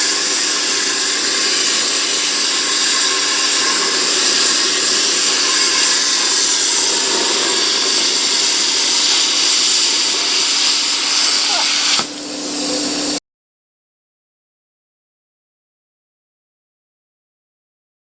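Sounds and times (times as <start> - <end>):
plasma cutter hissing: 0.0 - 13.2.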